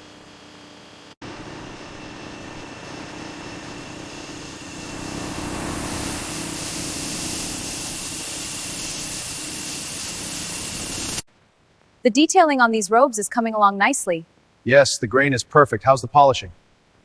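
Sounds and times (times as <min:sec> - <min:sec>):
loud hiss: 0:04.9 - 0:11.3.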